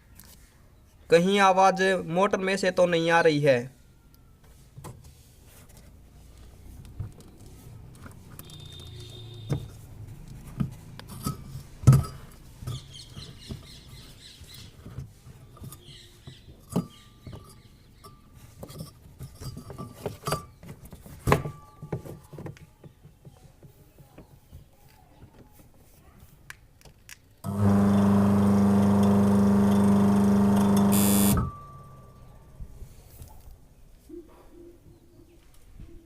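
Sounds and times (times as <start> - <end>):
washing machine motor humming: 27.5 - 32.5.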